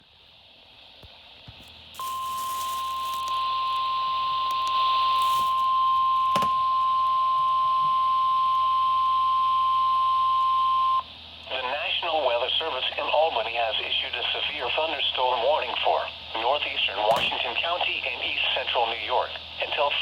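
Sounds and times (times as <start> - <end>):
steady high alarm tone: 2.0 - 11.1
radio hiss: 11.4 - 20.0.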